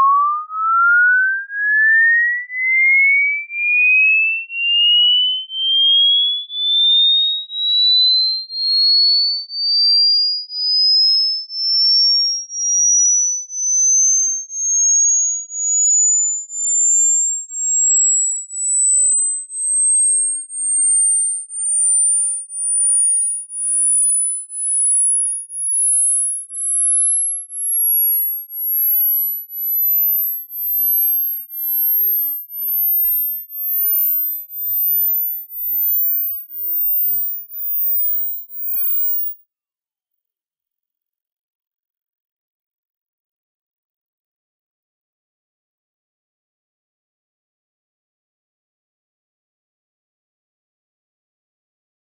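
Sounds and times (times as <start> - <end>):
rising sine tone beeps: 0.0 - 39.4.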